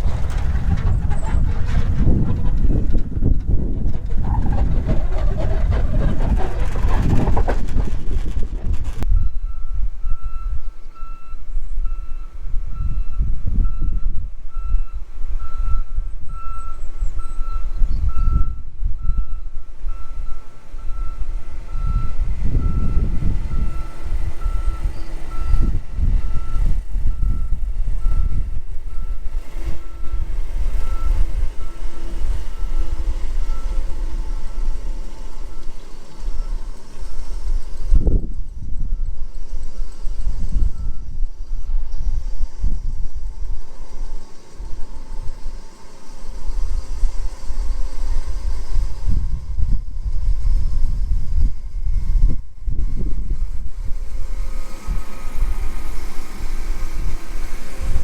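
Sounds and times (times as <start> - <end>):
engine rumble: 0.0 - 58.0
wind: 0.0 - 58.0
reversing alarm beeping: 9.1 - 38.0, 38.6 - 42.0.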